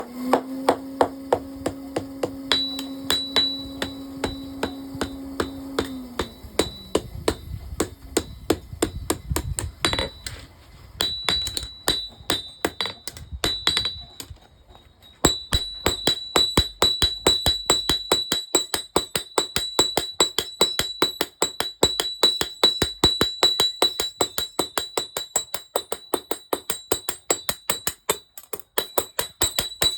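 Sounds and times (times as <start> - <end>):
hammer striking metal on anvil: 0.0 - 10.4, 11.0 - 29.9
steady hum: 0.0 - 14.0.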